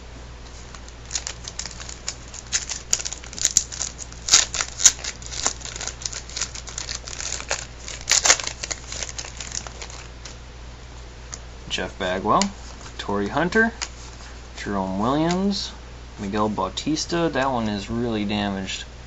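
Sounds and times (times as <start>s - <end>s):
crinkly wrapper crackling: 0.5s - 10.4s.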